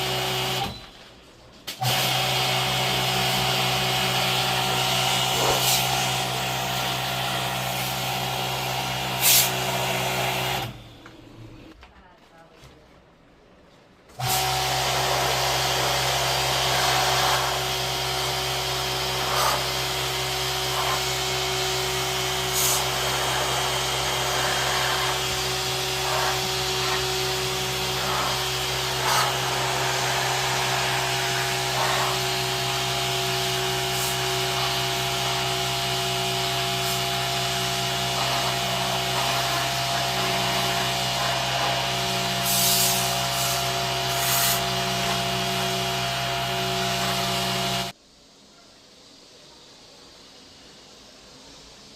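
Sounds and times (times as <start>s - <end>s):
electric machine humming: 14.2s - 48.0s.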